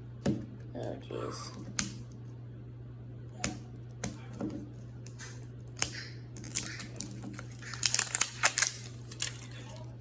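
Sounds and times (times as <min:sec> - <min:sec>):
steady low hum: 0:00.0 - 0:10.0
plastic packaging crinkling: 0:06.4 - 0:10.0.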